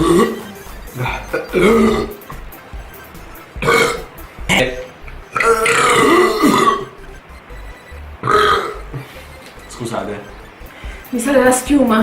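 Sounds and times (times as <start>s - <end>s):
man burping: 1.0s - 2.4s, 3.6s - 7.0s, 8.2s - 9.2s.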